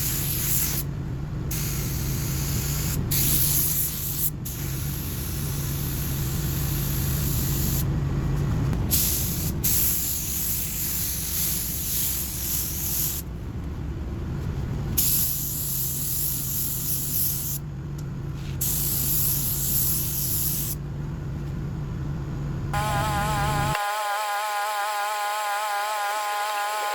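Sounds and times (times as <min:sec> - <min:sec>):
paint spray gun hissing: 0:00.0 - 0:00.8, 0:01.5 - 0:07.8, 0:08.9 - 0:13.2, 0:15.0 - 0:17.6, 0:18.6 - 0:20.8
steady low hum: 0:00.0 - 0:26.9.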